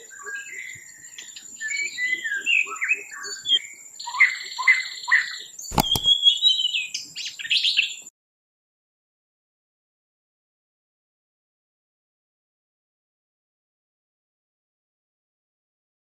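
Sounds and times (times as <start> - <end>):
sharp click: 5.7 - 6.2.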